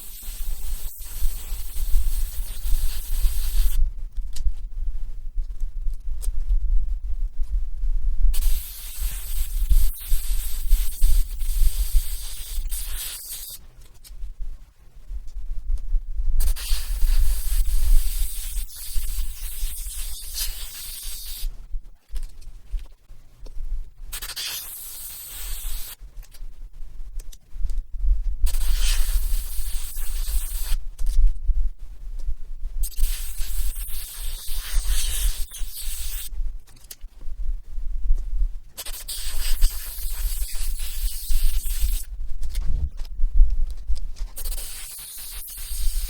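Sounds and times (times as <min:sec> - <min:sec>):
airbrush spraying hiss: 0:00.0 - 0:03.8, 0:08.3 - 0:13.6, 0:16.4 - 0:21.5, 0:24.1 - 0:26.0, 0:28.4 - 0:30.8, 0:32.8 - 0:36.3, 0:38.8 - 0:42.1, 0:44.4 - 0:46.0
steady low hum: 0:00.0 - 0:40.9.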